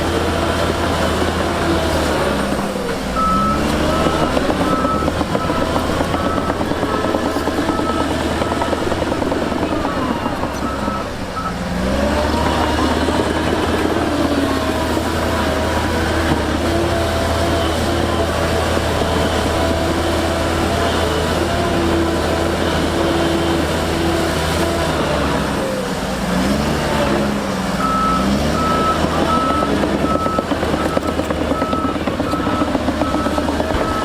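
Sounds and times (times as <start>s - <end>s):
heavy diesel machinery engine: 0.0s - 34.0s
reversing alarm beeping: 3.2s - 11.6s, 27.8s - 34.0s.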